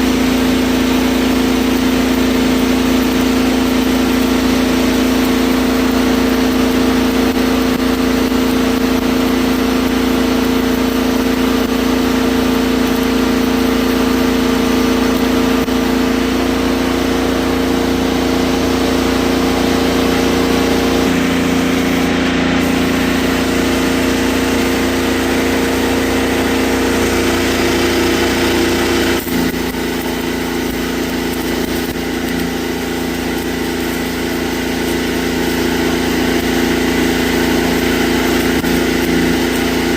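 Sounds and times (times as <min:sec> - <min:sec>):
diesel engine idling: 0:15.4 - 0:39.9.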